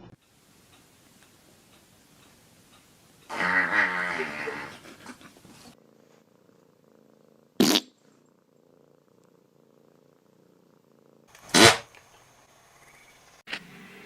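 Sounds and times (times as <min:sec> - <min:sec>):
cat purring: 0:01.0 - 0:11.3
short loud sharp noises: 0:11.4 - 0:12.0.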